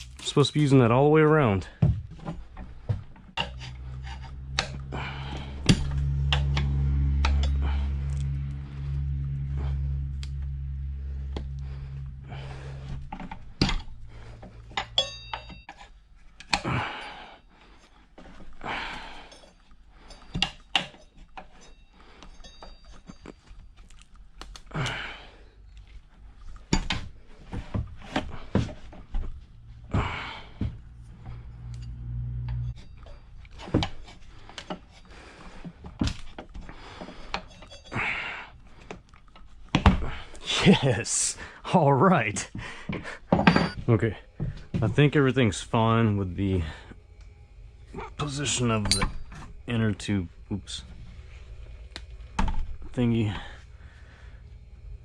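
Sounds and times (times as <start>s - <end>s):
low steady hum: 0.0s - 55.0s
hard breaths: 1.6s - 15.5s, 16.4s - 23.5s, 24.6s - 31.7s, 32.9s - 41.7s, 42.4s - 44.8s, 53.2s - 55.0s
metal tools clinking on wheel rim: 3.3s - 8.3s, 13.1s - 17.2s, 19.0s - 23.8s, 37.2s - 38.3s, 43.4s - 43.8s, 48.2s - 49.6s.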